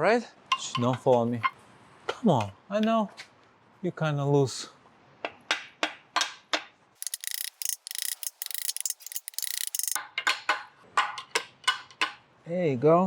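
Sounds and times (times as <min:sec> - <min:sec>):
ratchet wrench clicking: 0:07.0 - 0:10.0.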